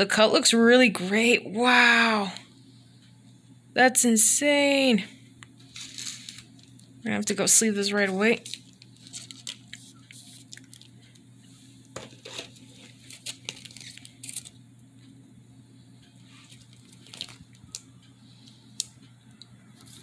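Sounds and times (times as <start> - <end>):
low electrical hum: 0.0 - 20.0
card rustling: 5.6 - 6.8, 8.0 - 11.2, 12.0 - 14.6, 16.3 - 18.6.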